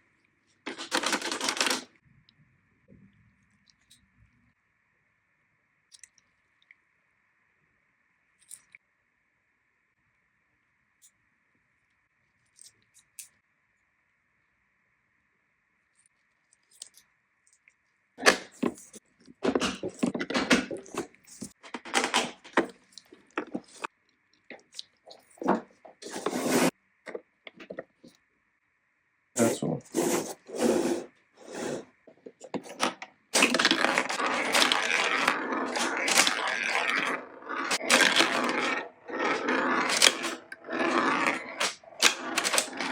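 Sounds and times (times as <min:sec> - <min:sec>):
toy pinball parts clacking: 0:00.7 - 0:01.9, 0:19.4 - 0:22.7, 0:32.5 - 0:42.9.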